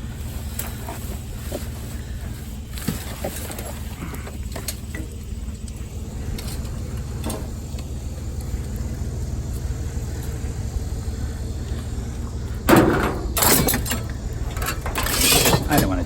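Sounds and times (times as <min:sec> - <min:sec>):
vehicle engine idling: 0:00.0 - 0:16.0
loud clatter of objects: 0:12.7 - 0:16.0.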